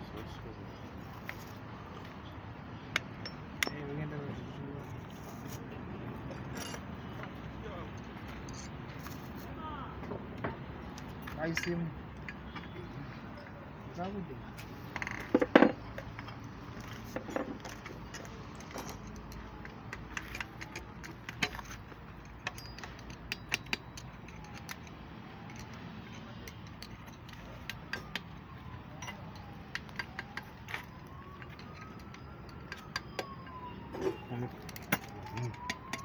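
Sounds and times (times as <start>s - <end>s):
sharp clicks and clinks: 2.9s - 4.1s, 17.3s - 33.6s
faint siren wailing: 10.8s - 36.0s.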